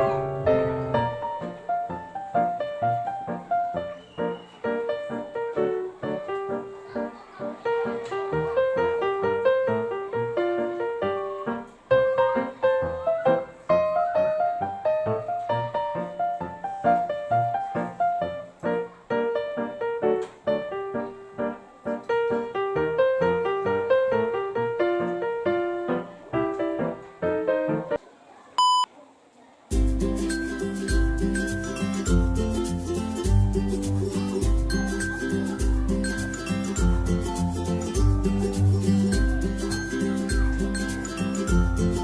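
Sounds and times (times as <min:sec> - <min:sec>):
quick piano-like melody: 0:00.0 - 0:28.0, 0:29.7 - 0:42.0
short electronic beep: 0:28.6 - 0:28.9.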